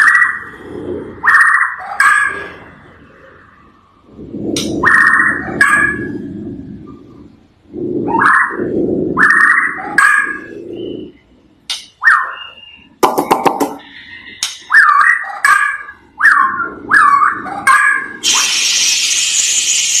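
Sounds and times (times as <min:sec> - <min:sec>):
steady hiss: 0:18.2 - 0:20.0.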